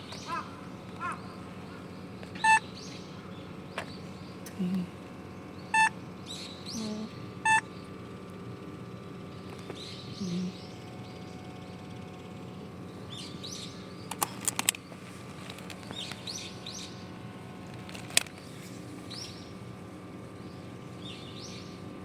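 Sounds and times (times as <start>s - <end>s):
birds chirping: 0.0s - 22.0s
steady hum: 0.0s - 22.0s
sharp clicks: 14.1s - 14.8s.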